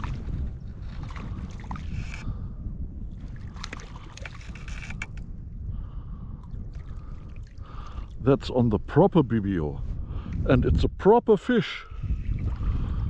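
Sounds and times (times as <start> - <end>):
water splashing: 0.0 - 2.2, 3.2 - 4.8
wind rumble on microphone: 0.0 - 13.0.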